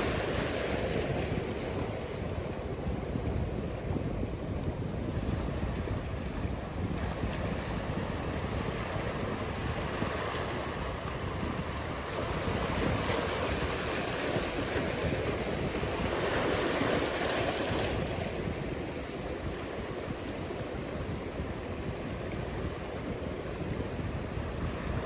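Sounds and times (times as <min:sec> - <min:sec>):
waves breaking: 0:00.0 - 0:25.0.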